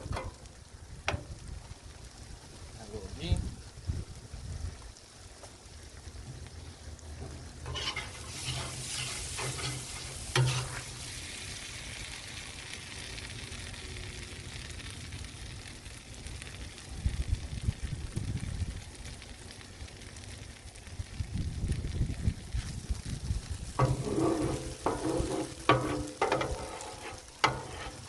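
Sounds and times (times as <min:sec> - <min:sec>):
food sizzling on griddle: 0:00.0 - 0:28.0
metal spatula scraping griddle: 0:07.2 - 0:11.2, 0:23.8 - 0:28.0.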